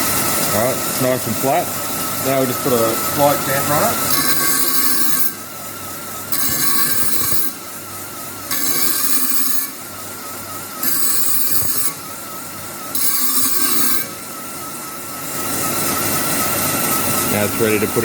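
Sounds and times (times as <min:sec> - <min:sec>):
steady machine hum: 0:00.0 - 0:18.0
abrasive strokes on steel: 0:02.2 - 0:05.5, 0:06.3 - 0:07.6, 0:08.5 - 0:09.9, 0:10.8 - 0:12.2, 0:12.9 - 0:16.1.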